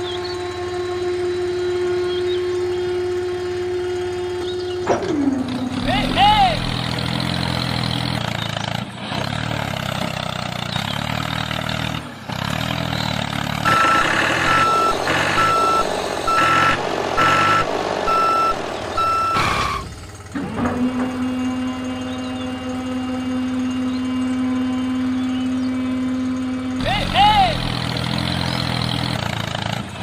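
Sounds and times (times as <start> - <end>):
vehicle engine running: 0.0 - 30.0
reversing alarm beeping: 13.6 - 20.2
steady hum: 13.7 - 20.3.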